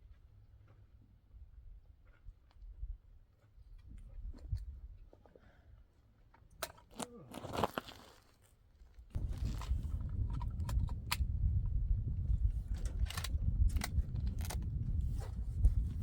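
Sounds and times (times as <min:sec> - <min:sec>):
footsteps crunching on dry ground: 0:07.4 - 0:10.6
low microphone rumble: 0:09.2 - 0:16.0.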